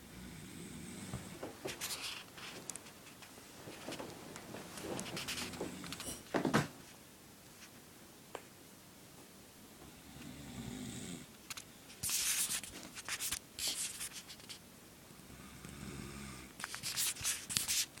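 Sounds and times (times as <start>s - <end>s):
person snoring: 0.0s - 1.4s, 10.0s - 11.3s, 15.2s - 16.6s.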